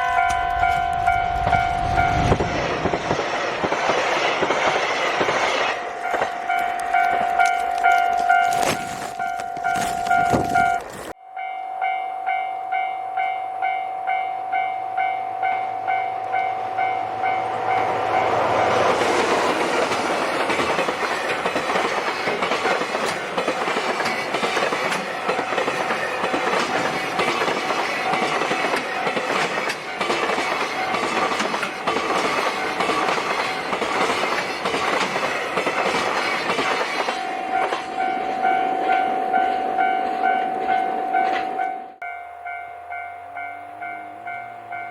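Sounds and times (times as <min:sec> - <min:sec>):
level crossing warning bell: 0:00.0 - 0:02.7, 0:05.8 - 0:36.0, 0:37.0 - 0:44.9
train wheels clattering over rails: 0:01.4 - 0:07.5, 0:17.7 - 0:39.6.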